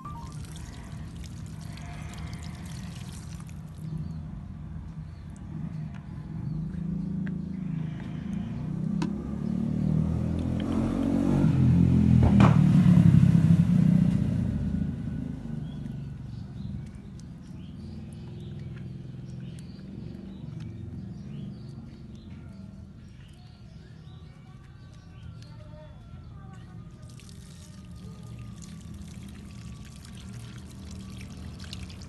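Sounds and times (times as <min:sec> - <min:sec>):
vehicle passing by: 0:05.6 - 0:17.0.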